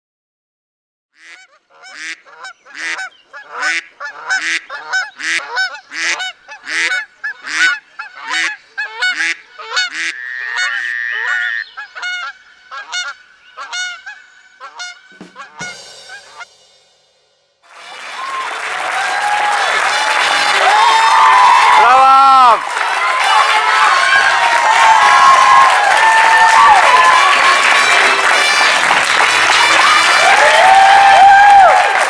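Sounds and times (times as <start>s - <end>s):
geese honking: 1.2s - 16.4s.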